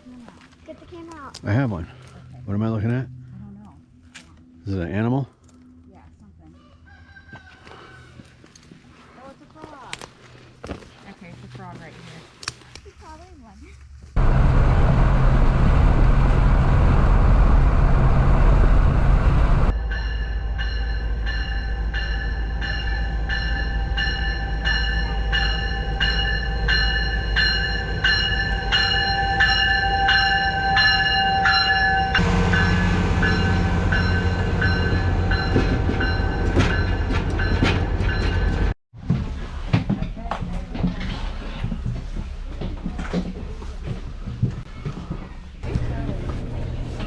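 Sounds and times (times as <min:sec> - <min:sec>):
train rumbling: 0:14.1 - 0:47.0
railway bell ringing: 0:19.7 - 0:38.7.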